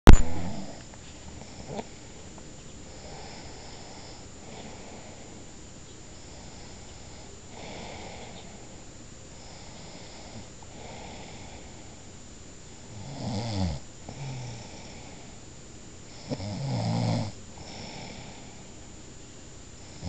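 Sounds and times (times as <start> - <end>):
person snoring: 12.9 - 15.3, 16.2 - 18.6.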